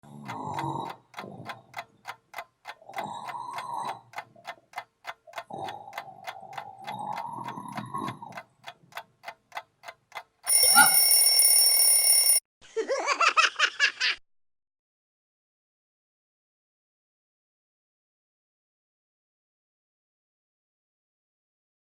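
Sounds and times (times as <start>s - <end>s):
clock ticking: 0.0s - 12.4s
alarm clock ringing: 10.5s - 12.4s.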